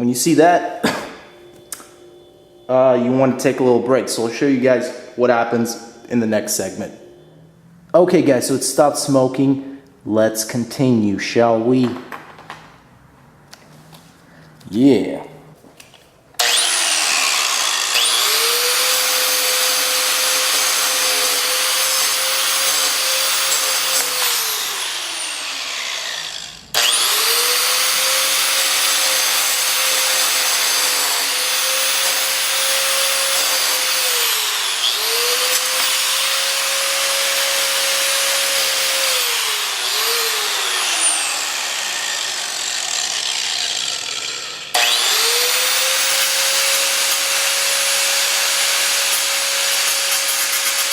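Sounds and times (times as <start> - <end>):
angle grinder grinding: 16.4 - 50.9.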